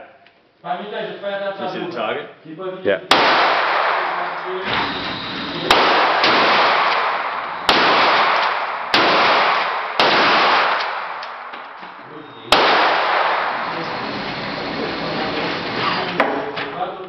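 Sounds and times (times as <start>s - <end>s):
gunshots echoing: 3.1s - 16.7s.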